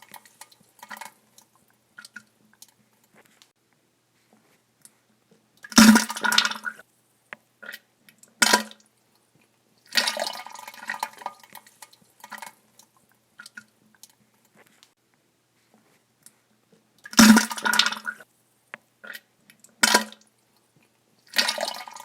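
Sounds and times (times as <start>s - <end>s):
wet flatulence and splatter: 5.6s - 6.8s, 17.1s - 18.3s, 19.0s - 20.2s.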